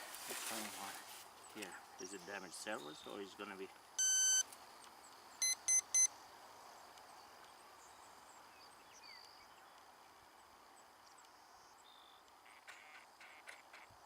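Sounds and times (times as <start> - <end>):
short electronic beeps: 4.0 - 4.5, 5.4 - 6.1.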